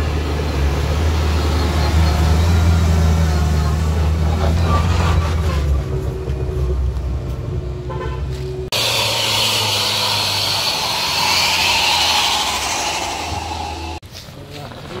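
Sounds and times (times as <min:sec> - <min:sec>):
diesel truck engine rumbling: 0:00.0 - 0:14.0.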